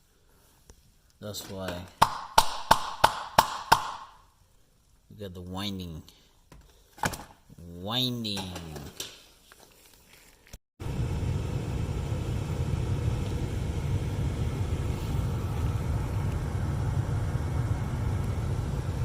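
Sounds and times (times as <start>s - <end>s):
blower fan rushing air: 10.8s - 19.0s.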